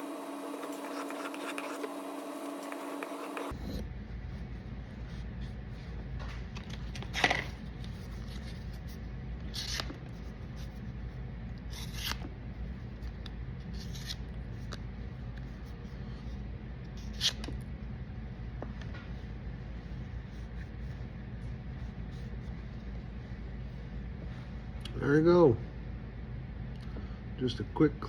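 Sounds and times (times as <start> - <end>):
steady low hum: 0.0 - 28.0
knife scraping: 0.1 - 3.8, 9.5 - 10.8, 11.7 - 12.2, 13.6 - 14.2, 17.0 - 17.5.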